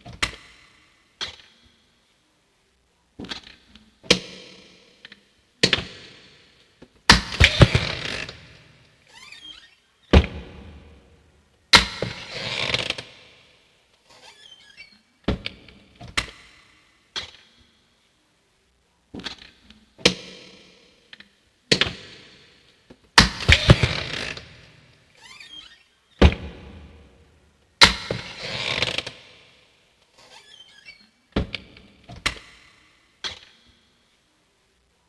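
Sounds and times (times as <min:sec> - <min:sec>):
hinge squeaks: 0:09.1 - 0:09.8, 0:14.1 - 0:15.1, 0:25.2 - 0:25.9, 0:30.2 - 0:31.2.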